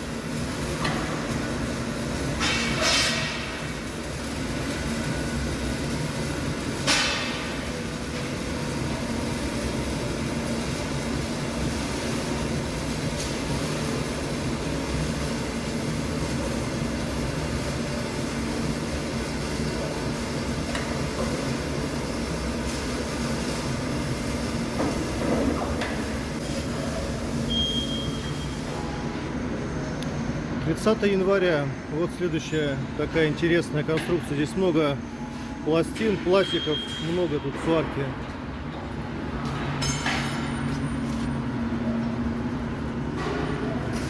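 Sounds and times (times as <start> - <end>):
arc welding crackle: 0.0 - 28.7
welding machine hum: 0.0 - 31.4.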